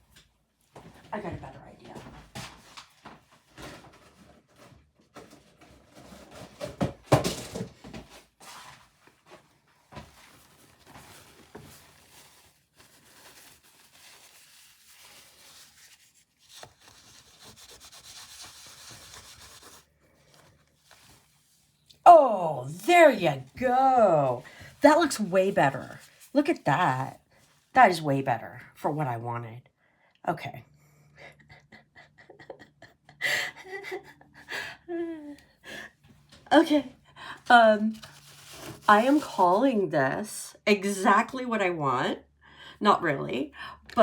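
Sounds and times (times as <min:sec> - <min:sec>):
scratchy rubbing on canvas: 0:14.2 - 0:21.6.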